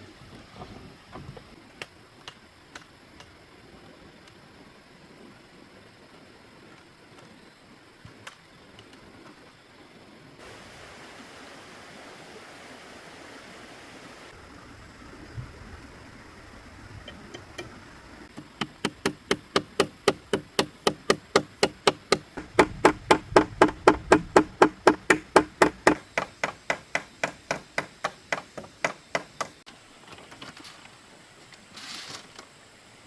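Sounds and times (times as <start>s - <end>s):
hand tool striking wood: 18.3s - 29.6s.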